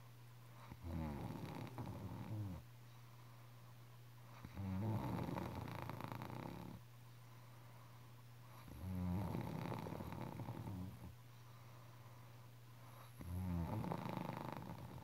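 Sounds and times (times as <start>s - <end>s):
steady low hum: 0.0s - 15.0s
person snoring: 4.5s - 6.8s, 8.6s - 11.0s, 13.2s - 15.0s.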